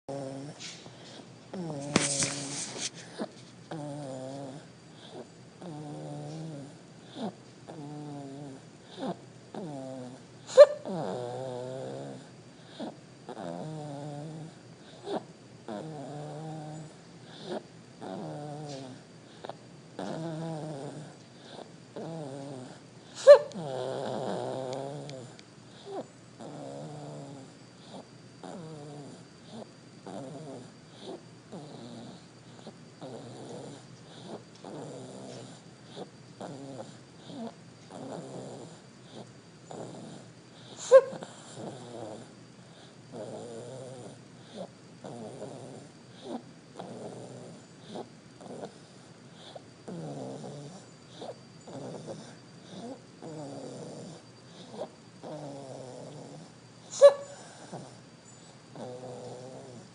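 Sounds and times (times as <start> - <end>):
rhythmic snoring: 0.1 - 59.9.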